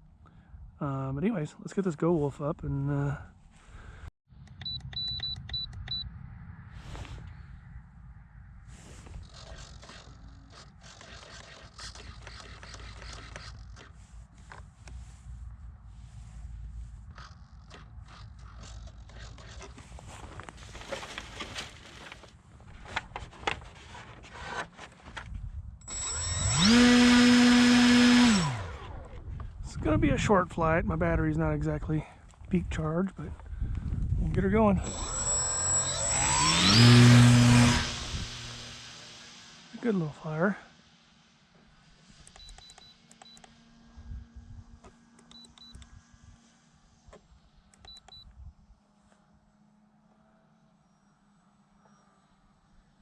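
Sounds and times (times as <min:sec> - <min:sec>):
clicks: 0:04.4 - 0:06.0, 0:42.2 - 0:43.6
short high electronic beeps: 0:04.6 - 0:06.0
handling clicks and rubs: 0:08.9 - 0:25.4
electric motor whining: 0:25.8 - 0:29.6, 0:34.8 - 0:47.9.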